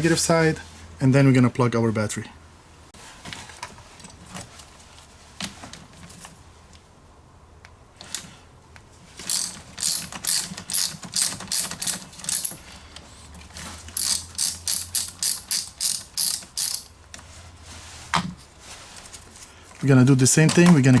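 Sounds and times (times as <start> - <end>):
ratchet wrench clicking: 9.3 - 12.6, 14.0 - 16.9.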